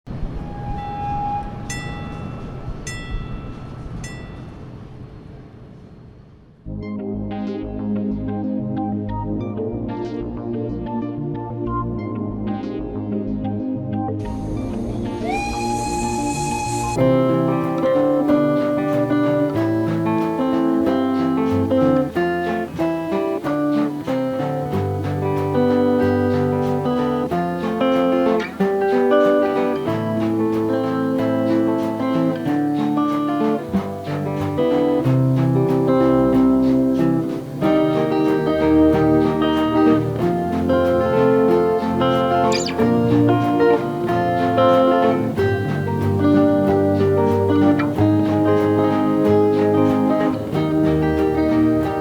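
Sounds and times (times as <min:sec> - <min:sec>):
bell ringing: 0:00.8 - 0:04.6
train rumbling: 0:15.0 - 0:52.0
train whistle: 0:15.2 - 0:17.5
acoustic guitar picking a melody: 0:15.2 - 0:52.0.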